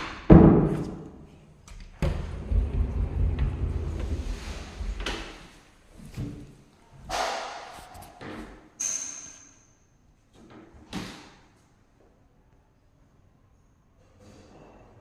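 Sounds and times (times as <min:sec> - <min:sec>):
low uneven rumbling: 0:02.0 - 0:06.0.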